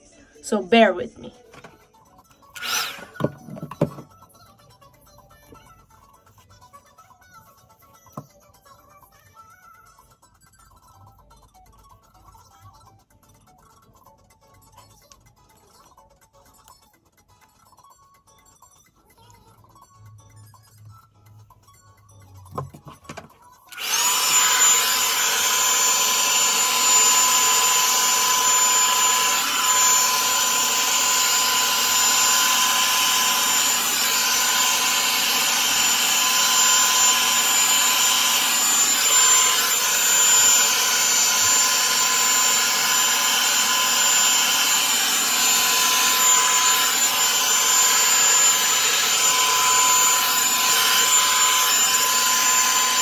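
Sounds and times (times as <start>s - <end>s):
hair dryer running: 2.6s - 4.1s, 23.1s - 53.0s.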